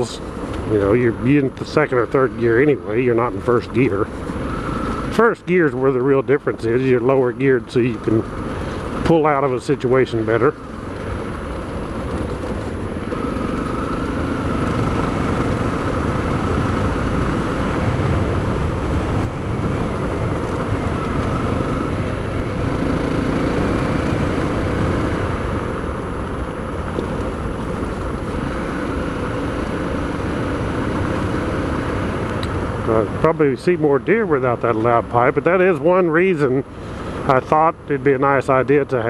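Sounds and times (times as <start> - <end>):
motorcycle engine cruising: 0.0 - 39.0
wind rush on microphone: 10.7 - 29.3.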